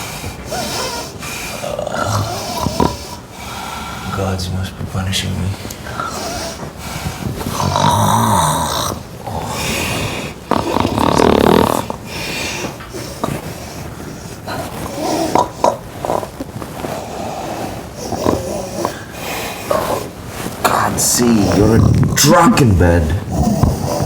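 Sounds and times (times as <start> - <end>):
breathing with snorts: 0.0 - 4.3, 5.5 - 24.0
person snoring loudly: 1.6 - 3.2, 7.5 - 12.1, 23.0 - 24.0.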